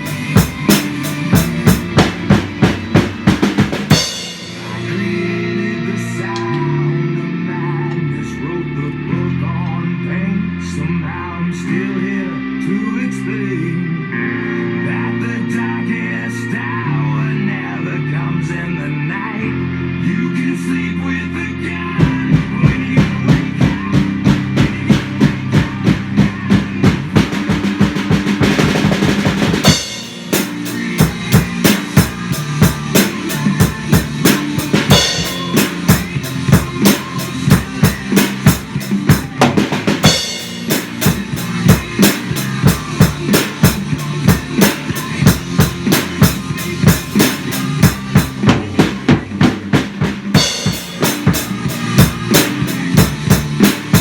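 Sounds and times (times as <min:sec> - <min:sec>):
drum kit: 0:00.0 - 0:05.5, 0:22.0 - 0:54.0
distorted guitar and bass: 0:00.0 - 0:54.0
hard rock music: 0:00.0 - 0:54.0.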